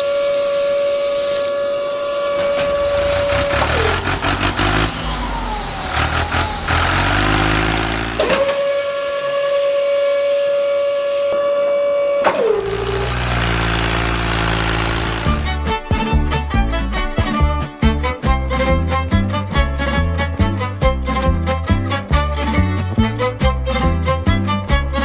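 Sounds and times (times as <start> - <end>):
steady whistle-like tone: 0.0 - 7.0, 8.5 - 13.1
vehicle engine running: 2.4 - 8.5, 12.6 - 16.5.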